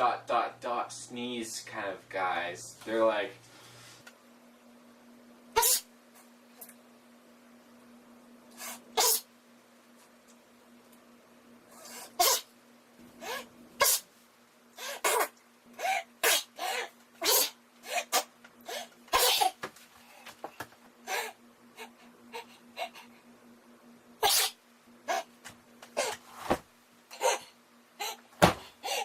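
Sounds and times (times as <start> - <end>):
man sneezing: 8.8 - 9.3, 11.8 - 12.5, 13.2 - 14.1, 16.2 - 18.3, 24.2 - 24.6.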